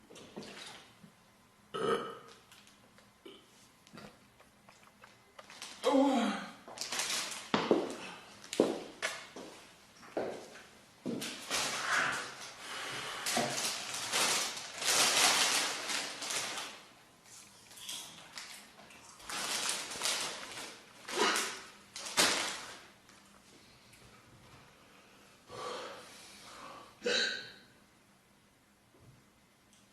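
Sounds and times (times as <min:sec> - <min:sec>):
woman burping: 0:01.7 - 0:02.3.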